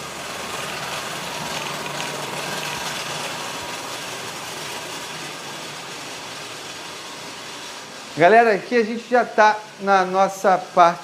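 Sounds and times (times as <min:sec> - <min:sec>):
machine shop hum and hiss: 0:00.0 - 0:11.0.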